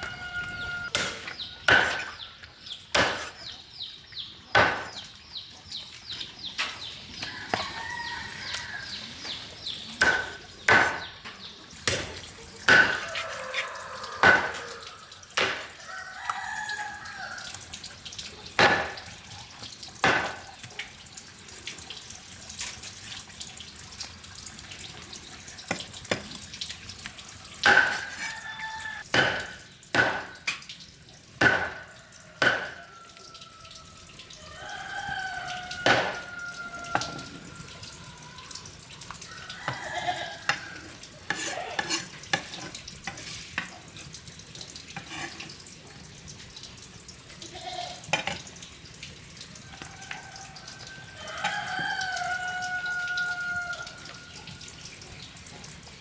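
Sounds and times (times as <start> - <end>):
farmyard fowl calling: 0.0 - 1.6, 12.7 - 15.2.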